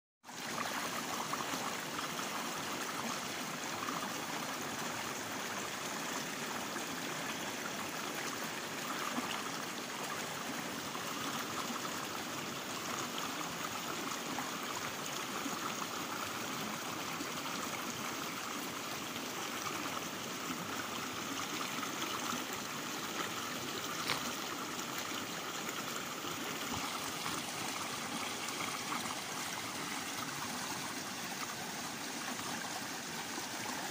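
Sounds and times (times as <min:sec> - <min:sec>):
waterfall pouring and splashing: 0:16.1 - 0:33.9.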